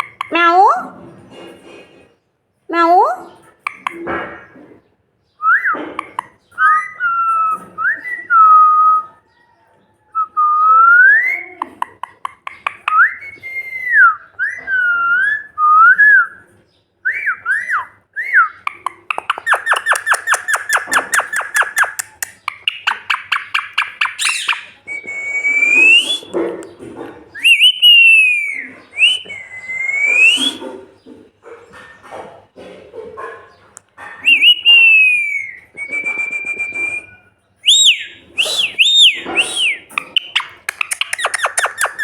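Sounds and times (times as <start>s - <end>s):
parrot chirping rapidly: 0.0s - 0.4s, 3.6s - 4.0s, 5.9s - 7.0s, 11.2s - 13.8s, 17.5s - 24.9s, 37.6s - 42.0s
parrot whistling: 17.1s - 26.3s, 27.4s - 30.6s, 34.2s - 42.0s.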